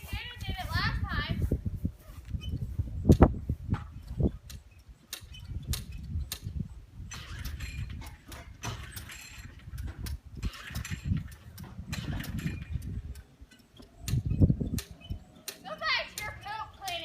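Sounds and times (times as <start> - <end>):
lawn mower clicks and rattles: 7.1 - 17.0.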